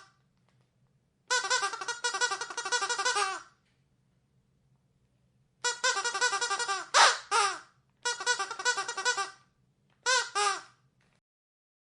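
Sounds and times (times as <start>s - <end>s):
squeaky dog toy squeaking: 1.3s - 3.5s, 5.6s - 9.4s, 10.0s - 10.8s.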